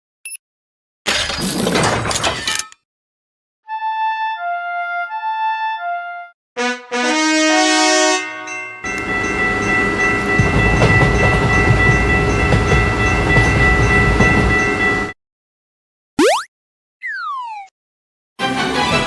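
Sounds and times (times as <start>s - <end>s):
brass music phrase: 3.7s - 8.5s
train horn: 6.6s - 10.6s
train rumble: 8.8s - 15.2s.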